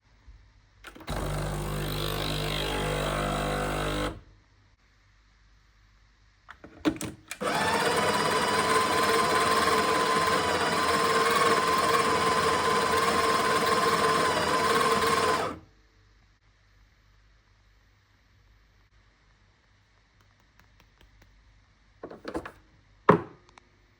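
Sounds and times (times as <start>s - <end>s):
espresso machine whine: 7.4s - 15.6s.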